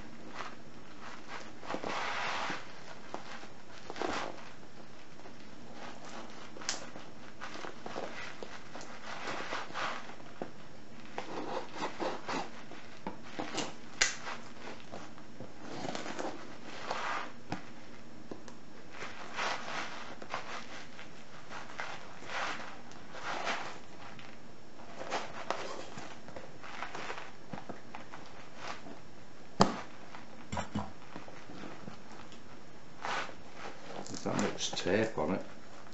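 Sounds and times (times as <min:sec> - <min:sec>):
packing tape scraping and tearing: 0:11.0 - 0:17.4, 0:25.0 - 0:27.4.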